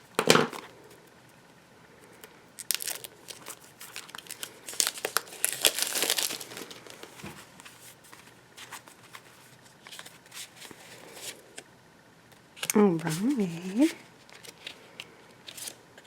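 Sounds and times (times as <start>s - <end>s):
packaging crinkling and tearing: 2.6s - 7.8s.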